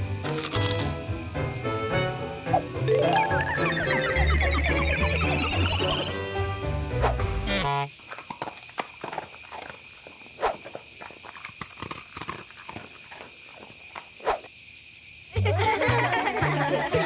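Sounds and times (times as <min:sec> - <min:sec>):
background music: 0:00.0 - 0:07.7, 0:15.5 - 0:17.0.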